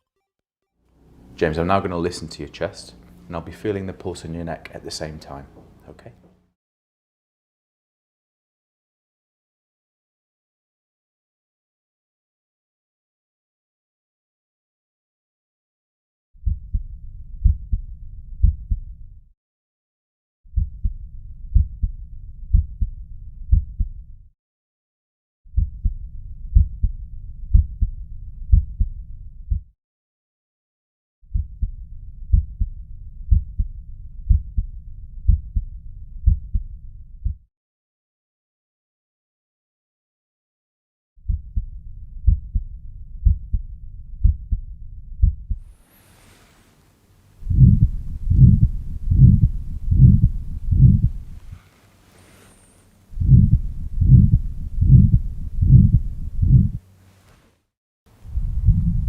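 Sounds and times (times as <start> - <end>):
heartbeat through a stethoscope: 16.4 - 19.1, 20.5 - 24.2, 25.5 - 29.7, 31.3 - 37.5, 41.2 - 45.7, 47.4 - 51.6, 53.1 - 56.8, 58.3 - 59.0
heart murmur: 18.4 - 19.0, 20.6 - 21.9, 22.5 - 22.9, 23.5 - 24.0, 25.6 - 26.9, 27.5 - 27.9, 32.3 - 32.7, 33.3 - 33.7, 34.3 - 34.7, 35.3 - 36.6, 37.2 - 37.4, 41.3 - 42.6, 45.2 - 45.6, 47.4 - 51.6, 53.2 - 56.8, 58.3 - 59.0.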